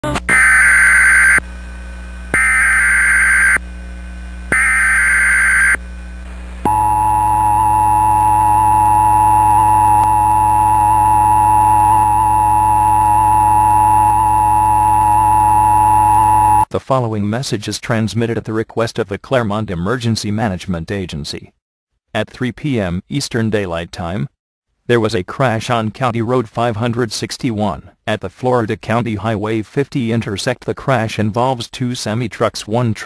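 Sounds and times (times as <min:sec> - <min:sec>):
warbling digital data tones: 0:04.5 - 0:05.8, 0:06.7 - 0:16.7
two-tone attention signal: 0:06.7 - 0:16.7.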